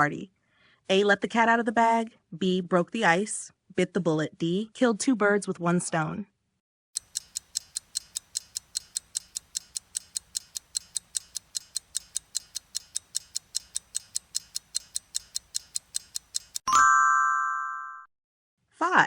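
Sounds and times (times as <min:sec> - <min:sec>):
clock ticking: 0:07.0 - 0:16.7.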